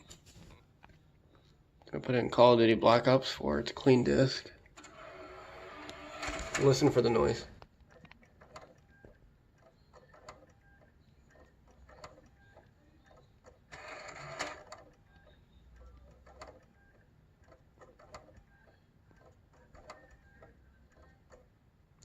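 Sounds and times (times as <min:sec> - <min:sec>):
disc drive clicking and knocking: 0:04.8 - 0:08.8, 0:13.5 - 0:14.9.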